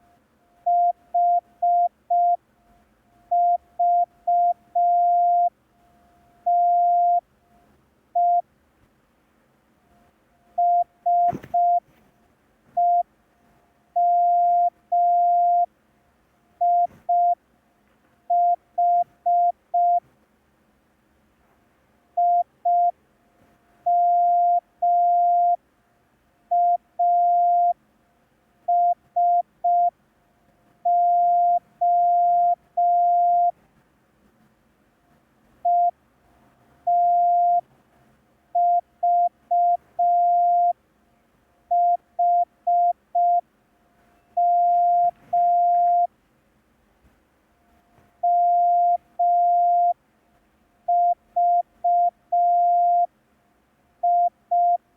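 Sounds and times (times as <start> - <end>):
morse code beeps: 6.5 - 7.2, 10.6 - 11.8, 12.8 - 13.1, 14.0 - 15.7, 16.6 - 17.4, 18.3 - 20.0, 30.9 - 33.5, 36.9 - 37.6, 38.6 - 40.8, 41.7 - 43.4, 44.2 - 46.1, 48.2 - 50.0, 50.9 - 53.1, 54.0 - 54.8.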